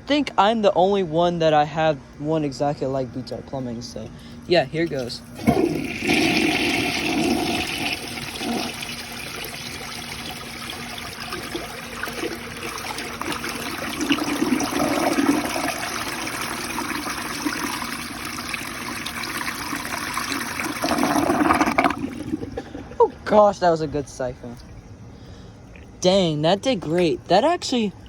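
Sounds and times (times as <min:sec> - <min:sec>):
toilet flushing: 0:04.8 - 0:23.1.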